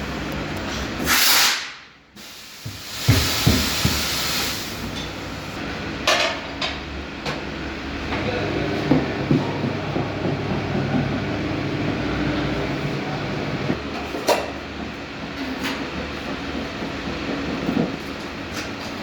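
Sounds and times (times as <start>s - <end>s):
air hiss burst: 1.0s - 4.9s.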